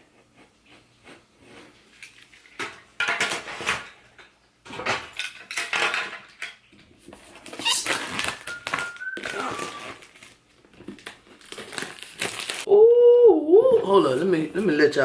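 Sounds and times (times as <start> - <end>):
hard objects clattering: 2.0 - 10.2.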